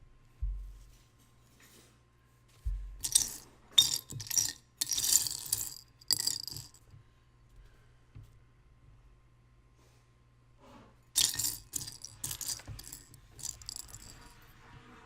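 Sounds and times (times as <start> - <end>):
plastic pieces clattering: 3.0 - 6.8, 11.2 - 14.3.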